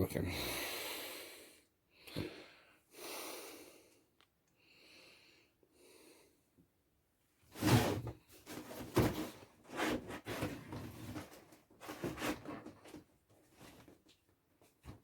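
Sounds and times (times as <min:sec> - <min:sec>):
cardboard box rustling and scraping: 0:07.6 - 0:14.0.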